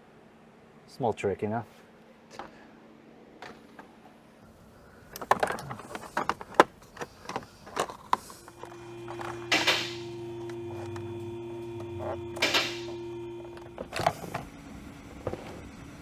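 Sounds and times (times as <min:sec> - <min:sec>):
steady hum with held tones: 0:03.4 - 0:16.0
plastic trim clicks and knocks: 0:04.6 - 0:14.5.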